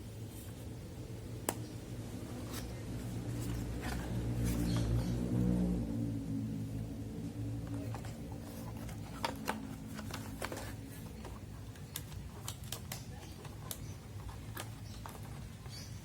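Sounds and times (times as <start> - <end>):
packaging clicks and taps: 7.6 - 15.8.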